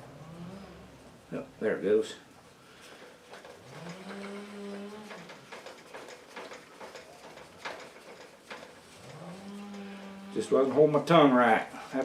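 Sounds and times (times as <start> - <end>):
low moo-like call: 0.0 - 1.0, 3.7 - 5.4, 9.0 - 10.6.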